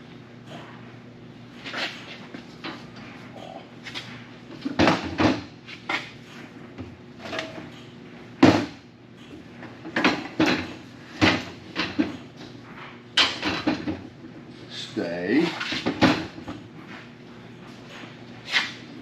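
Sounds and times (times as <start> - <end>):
metal hardware knocks and clanks: 6.3 - 14.1.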